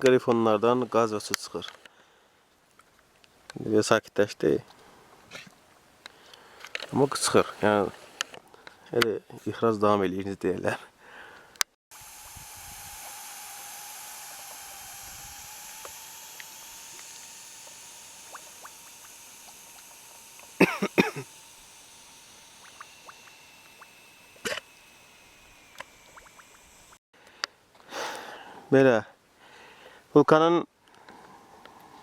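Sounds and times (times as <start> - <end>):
steady gas hiss: 6.4 - 8.4, 11.9 - 26.9.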